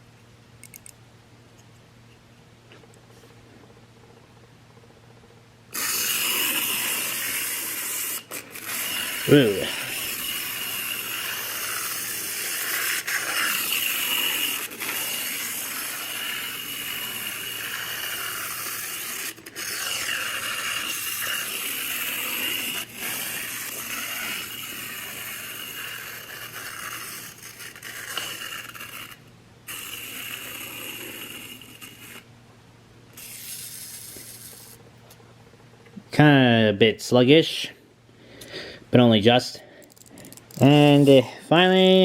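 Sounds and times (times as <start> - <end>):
clockwork motor whirring: 5.7 - 32.2, 33.2 - 34.8
toy train wheels rattling: 5.7 - 32.2, 33.2 - 34.8.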